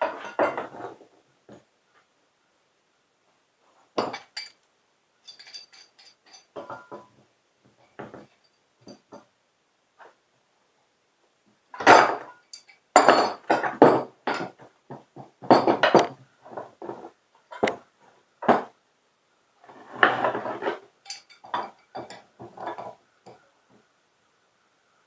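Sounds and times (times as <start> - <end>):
metal parts clanking and scraping: 5.2 - 7.0, 19.7 - 23.0.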